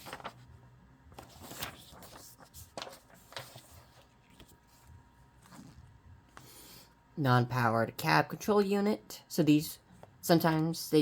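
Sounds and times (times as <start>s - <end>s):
packaging rustling: 0.0s - 0.4s, 1.2s - 5.8s.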